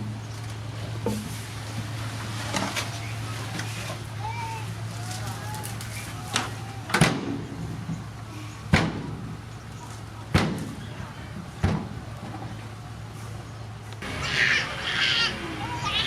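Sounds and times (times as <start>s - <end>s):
heavy earthmoving equipment running: 0.0s - 16.0s.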